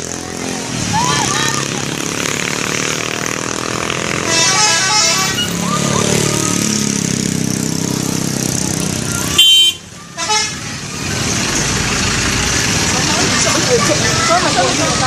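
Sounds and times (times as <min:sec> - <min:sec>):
bus engine running: 0:00.0 - 0:15.0
musical bus horn: 0:04.1 - 0:05.6, 0:09.3 - 0:10.8
short horn blast: 0:04.2 - 0:05.6, 0:09.4 - 0:10.6.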